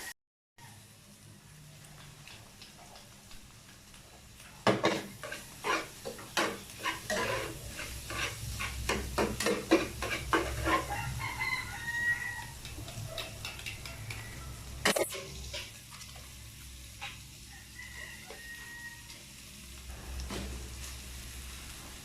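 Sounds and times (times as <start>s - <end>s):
metal spatula scraping a pan: 4.6s - 17.4s
rooster crowing: 10.6s - 14.8s, 17.4s - 19.3s.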